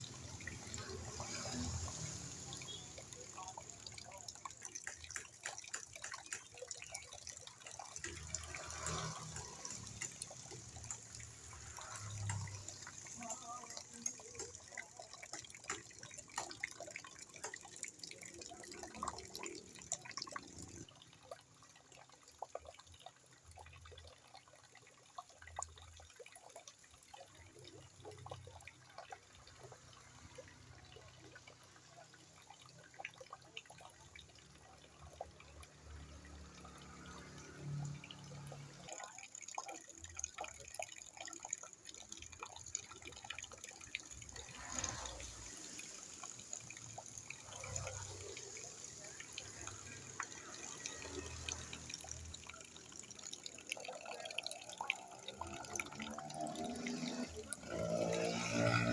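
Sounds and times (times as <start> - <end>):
water dripping into a bucket: 0.0 - 58.9.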